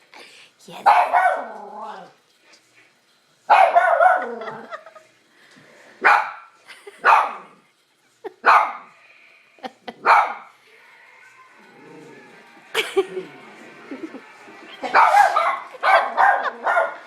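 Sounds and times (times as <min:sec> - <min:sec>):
dog barking: 0:00.8 - 0:01.6, 0:03.5 - 0:04.4, 0:06.0 - 0:07.5, 0:08.4 - 0:08.9, 0:10.0 - 0:10.5, 0:14.8 - 0:17.0.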